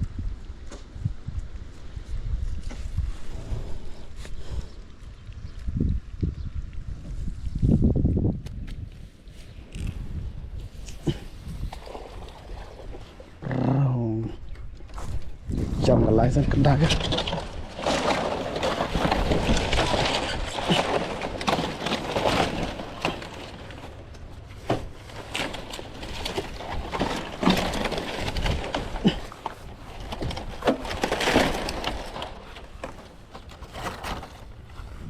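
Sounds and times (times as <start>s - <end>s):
rustling: 8.9s - 13.6s, 14.4s - 35.0s
sharp cracks and crunching: 16.3s - 35.0s.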